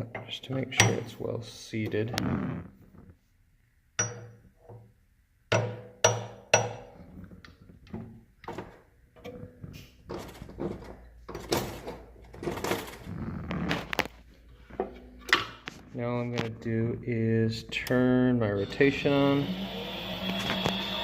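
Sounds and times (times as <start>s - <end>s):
irregular knocks and clatter: 5.5s - 13.1s.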